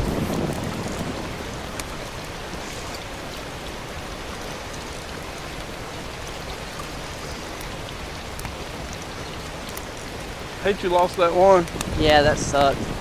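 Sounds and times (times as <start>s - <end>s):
water hissing: 0.0s - 13.0s
faint ticks: 4.4s - 12.8s.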